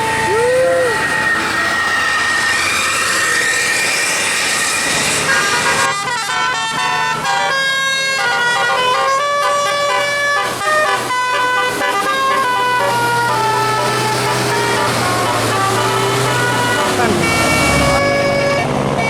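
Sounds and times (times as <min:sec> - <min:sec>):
musical air horn tune: 0:05.2 - 0:19.0.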